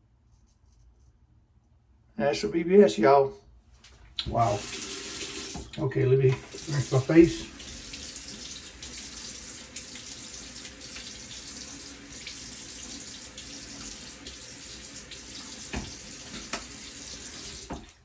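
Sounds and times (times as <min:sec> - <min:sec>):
water running from sink tap: 0:04.2 - 0:18.0
water splashes: 0:04.2 - 0:18.0.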